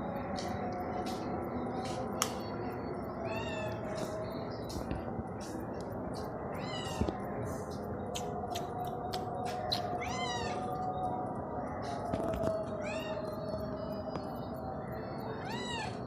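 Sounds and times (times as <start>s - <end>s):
cat meowing: 3.2s - 3.8s, 10.0s - 10.6s, 15.4s - 16.0s.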